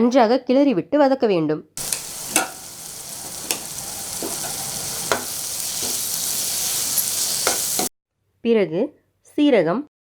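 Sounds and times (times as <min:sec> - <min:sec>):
spoon scraping and tapping pan: 0:01.8 - 0:02.7, 0:03.4 - 0:07.9
masala sizzling in hot oil: 0:01.8 - 0:07.9.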